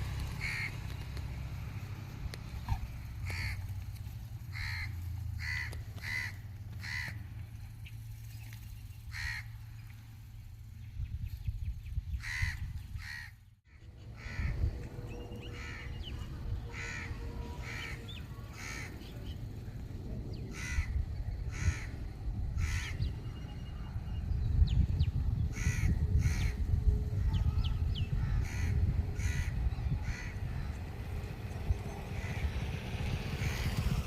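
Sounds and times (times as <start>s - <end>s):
steady low rumble: 0.0s - 34.0s
bird calling: 0.2s - 1.0s, 12.1s - 19.7s, 20.4s - 24.8s.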